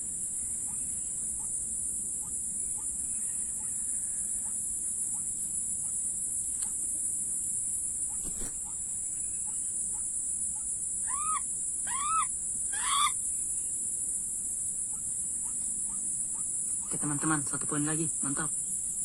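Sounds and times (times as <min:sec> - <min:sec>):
bird harsh calls: 0:10.6 - 0:13.2.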